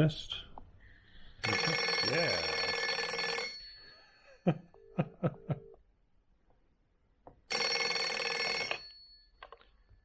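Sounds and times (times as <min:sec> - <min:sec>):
telephone bell ringing: 0:01.4 - 0:05.7, 0:07.5 - 0:09.5.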